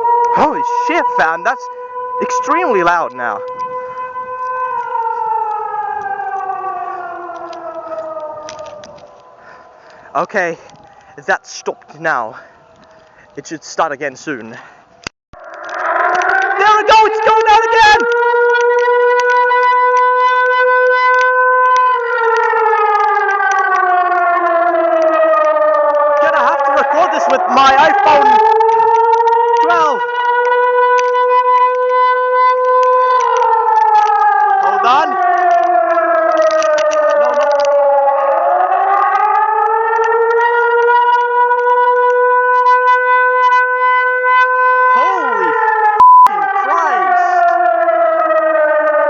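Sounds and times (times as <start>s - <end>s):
warning siren: 0.0s - 49.0s.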